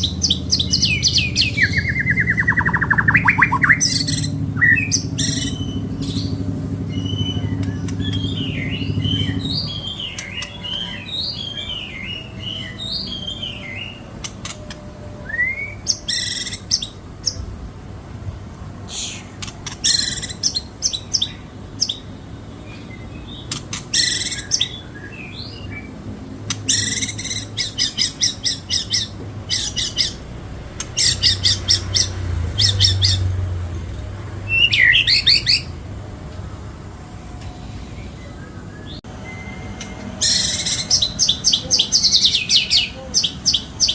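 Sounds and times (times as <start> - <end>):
songbird singing varied song: 0.0 - 17.5, 34.4 - 35.8, 37.4 - 43.9.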